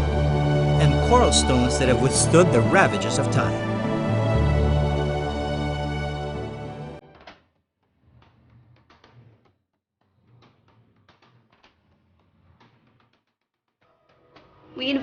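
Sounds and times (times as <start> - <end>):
background music: 0.0 - 7.0.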